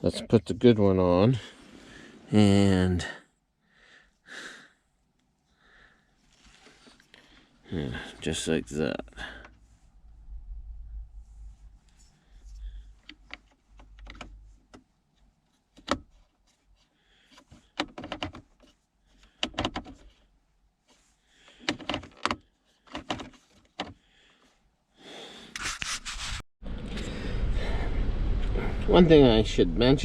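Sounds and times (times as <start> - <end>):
hard plastic clicks and knocks: 13.0 - 14.8, 17.4 - 18.7, 19.3 - 20.1, 21.5 - 24.0.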